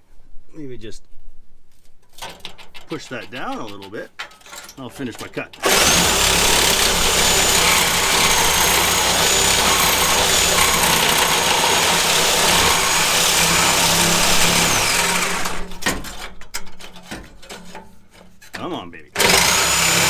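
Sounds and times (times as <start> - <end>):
reciprocating saw cutting metal: 5.6 - 16.4, 19.2 - 20.0.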